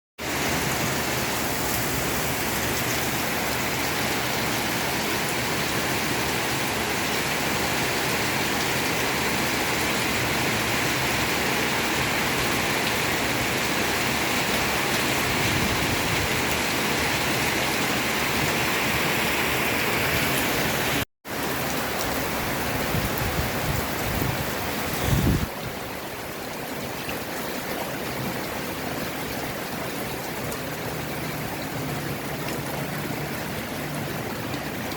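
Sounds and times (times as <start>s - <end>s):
heavy rain hissing: 0.2s - 5.6s, 24.1s - 25.6s.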